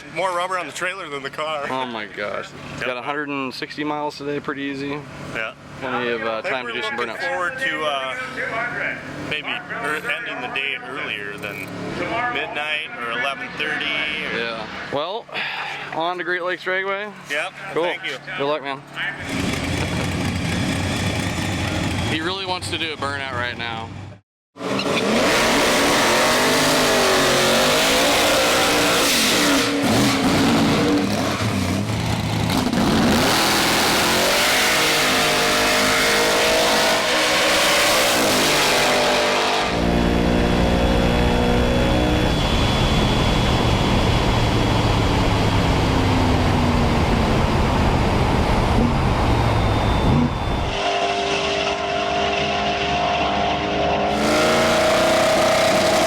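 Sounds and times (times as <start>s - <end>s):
drag car engine revving: 19.1s - 23.0s, 24.6s - 56.0s.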